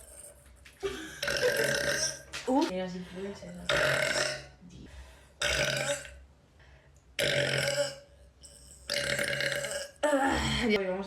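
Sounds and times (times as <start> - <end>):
woman belching: 0.8 - 2.3, 3.6 - 4.6, 5.4 - 6.1, 7.2 - 8.0, 8.9 - 10.8.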